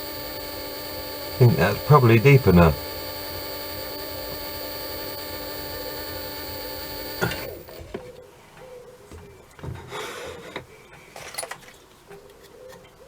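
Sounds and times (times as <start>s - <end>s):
lathe motor humming: 0.0s - 7.9s.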